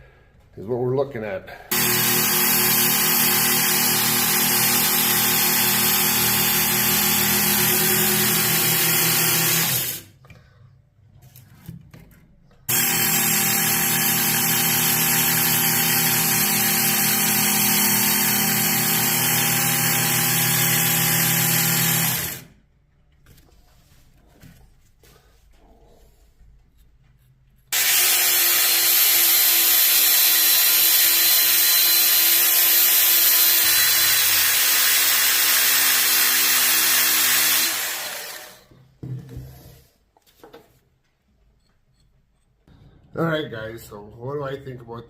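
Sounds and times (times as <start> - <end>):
belt sharpener motor hum: 1.7 - 10.1, 27.7 - 38.7
faint handling sounds: 10.2 - 12.7, 22.8 - 27.7.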